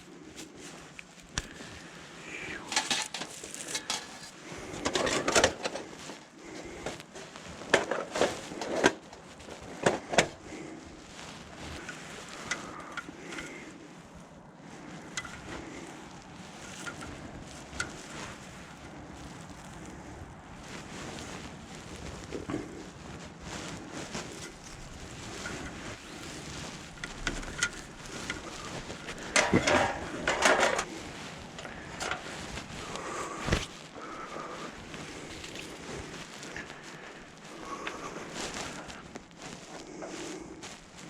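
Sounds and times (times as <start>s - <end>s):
camp gear clinking and knocking: 0.0s - 10.8s, 11.6s - 13.8s, 14.9s - 18.8s, 23.7s - 39.2s.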